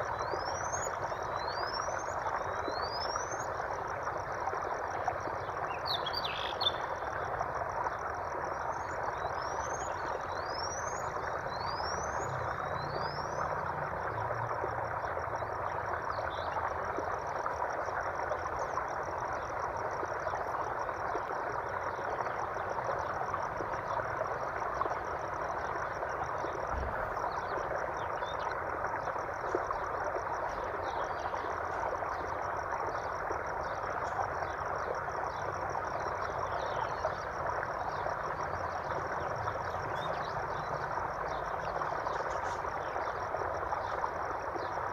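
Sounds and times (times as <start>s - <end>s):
high trilling frogs or insects: 0.0s - 44.9s
running water rushing: 0.0s - 44.9s
bird chirps: 5.7s - 6.9s.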